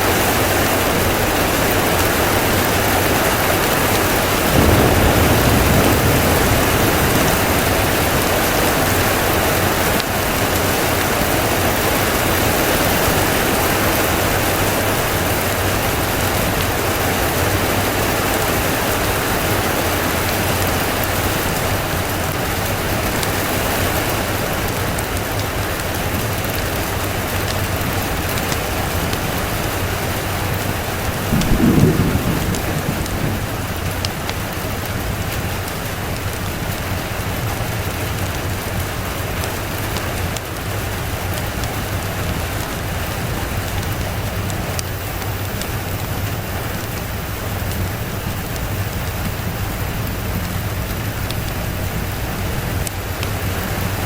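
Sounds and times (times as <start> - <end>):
rain pouring: 0.0 - 54.0
low rumble of thunder: 2.9 - 13.3, 29.3 - 35.6.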